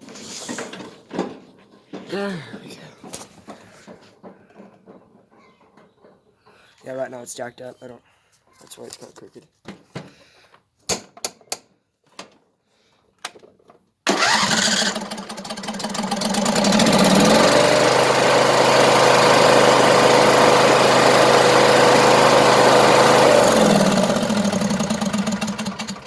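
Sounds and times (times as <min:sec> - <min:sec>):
riding lawn mower engine: 0:14.1 - 0:26.0.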